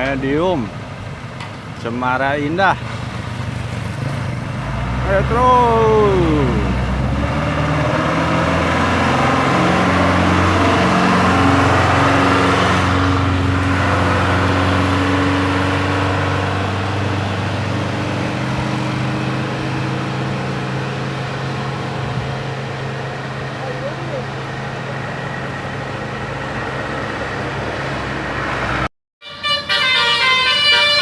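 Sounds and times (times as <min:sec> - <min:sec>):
bus engine running: 0:00.0 - 0:31.0.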